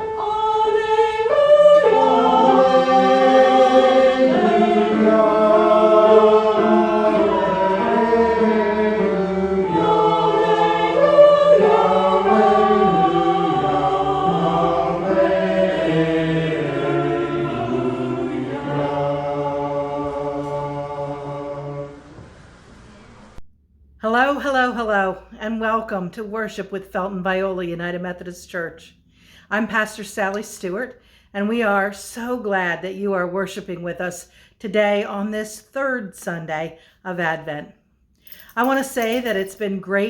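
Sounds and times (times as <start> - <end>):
choir singing unaccompanied: 0.0 - 23.4.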